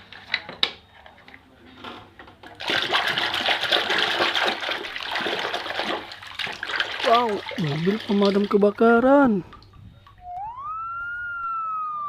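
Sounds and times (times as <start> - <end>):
water splashing in a basin: 2.5 - 11.0.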